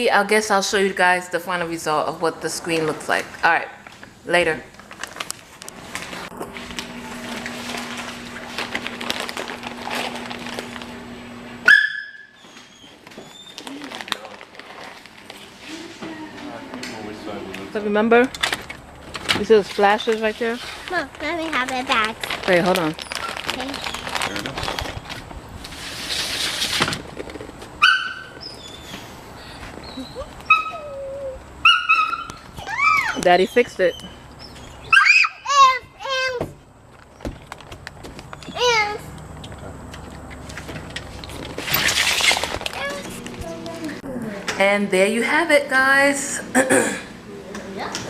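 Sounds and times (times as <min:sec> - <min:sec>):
rustling: 0:03.8 - 0:11.4, 0:19.6 - 0:30.4, 0:40.4 - 0:43.8
dog yelping: 0:11.6 - 0:13.6, 0:27.8 - 0:29.1, 0:29.9 - 0:36.1
small clicks and rustling: 0:20.0 - 0:25.3, 0:36.9 - 0:43.5
steady low hum: 0:39.0 - 0:48.0.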